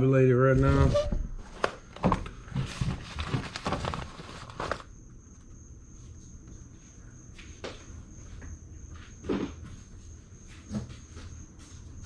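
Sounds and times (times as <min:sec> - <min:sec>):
rustling and scraping of handling: 0:00.4 - 0:06.2.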